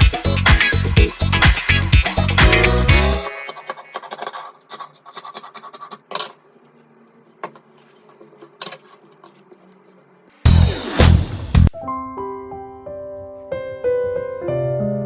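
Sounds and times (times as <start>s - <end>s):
fabric scratching and rubbing: 4.1s - 10.5s.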